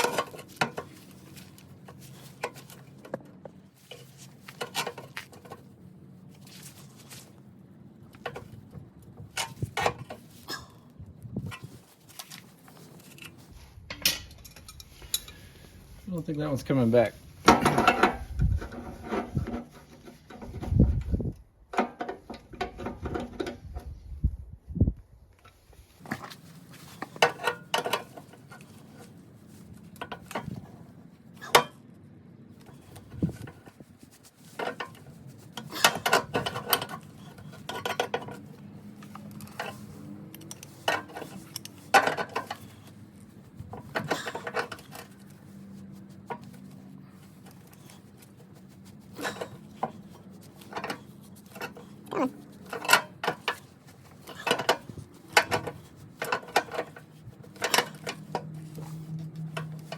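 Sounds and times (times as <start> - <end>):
metal tools clinking and clanking: 0.0 - 1.1, 13.0 - 15.6, 16.6 - 20.6, 35.6 - 42.9, 43.8 - 45.2, 49.2 - 59.9.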